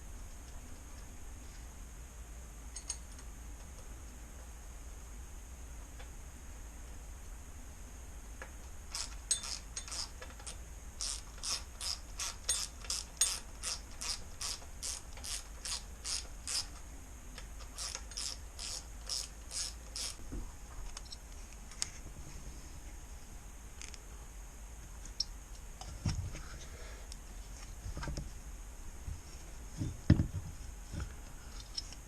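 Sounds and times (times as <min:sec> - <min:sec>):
ratchet wrench clicking: 0:08.9 - 0:16.7, 0:17.8 - 0:20.2.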